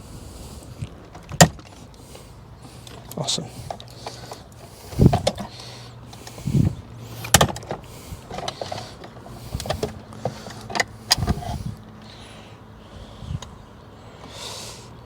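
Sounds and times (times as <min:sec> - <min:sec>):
tools clicking and rattling on parts: 0:02.6 - 0:11.6.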